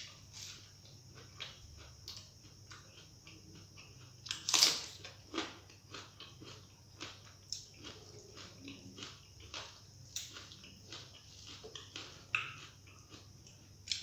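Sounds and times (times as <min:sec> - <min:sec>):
chewing and wet mouth clicks: 0:05.9 - 0:14.0.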